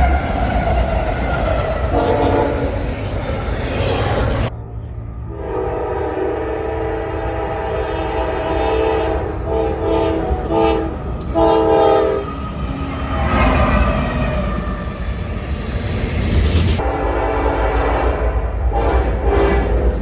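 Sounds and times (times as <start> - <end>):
locomotive air horn: 0.0 - 3.0, 5.3 - 15.1, 16.8 - 20.0
low rumble of train: 0.0 - 20.0.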